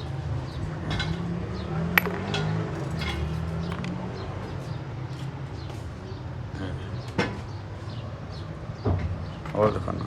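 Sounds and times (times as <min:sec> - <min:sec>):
metal tools clinking: 0:02.0 - 0:03.4.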